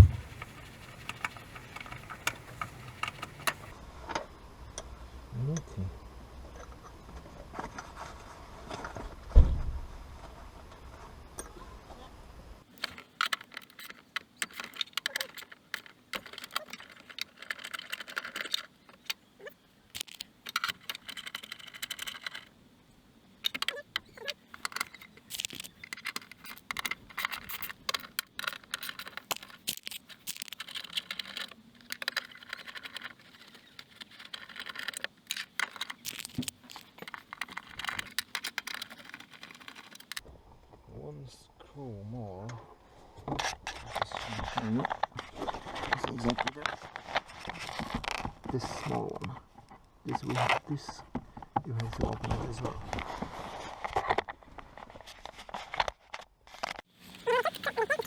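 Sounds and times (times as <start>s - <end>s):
hand tools and metal parts rattling: 0.0s - 3.8s, 12.7s - 22.6s, 23.4s - 40.2s, 56.8s - 58.0s.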